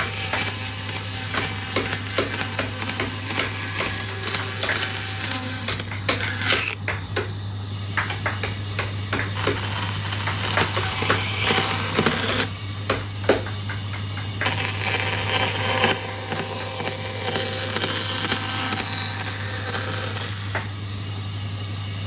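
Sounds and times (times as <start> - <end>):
tools knocking on wood: 0.0 - 14.7, 20.5 - 20.8.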